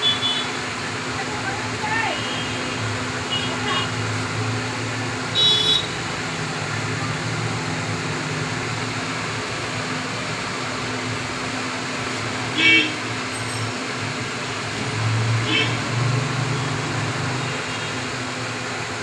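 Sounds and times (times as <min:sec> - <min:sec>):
street traffic noise: 0:00.0 - 0:19.0
vehicle horn toots: 0:05.3 - 0:06.0.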